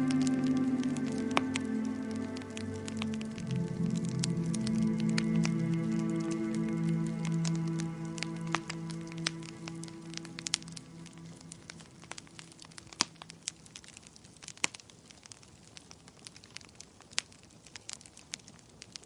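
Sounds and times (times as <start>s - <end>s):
soft music: 0.0s - 13.3s
wood fire crackling: 0.0s - 19.0s.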